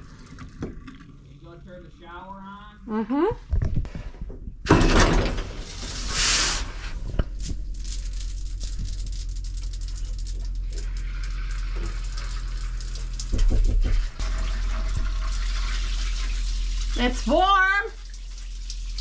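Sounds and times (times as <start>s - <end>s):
low rumble: 4.2s - 15.4s
hissing water surge: 5.6s - 7.1s
water running from faucet: 5.6s - 19.0s.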